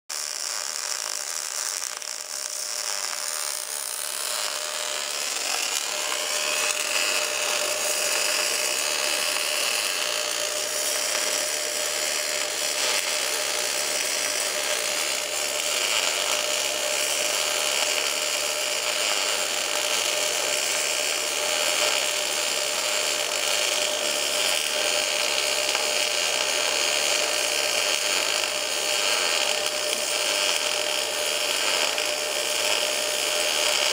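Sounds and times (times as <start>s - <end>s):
welding arc crackling hiss: 0.1s - 33.9s.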